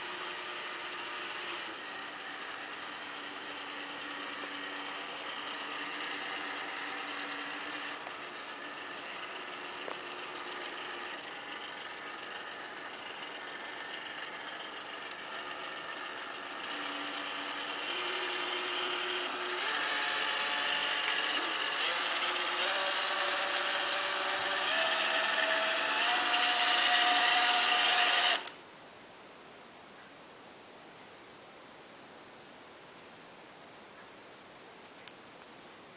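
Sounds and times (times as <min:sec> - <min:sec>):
robot vacuum motor whine: 0:00.0 - 0:28.6.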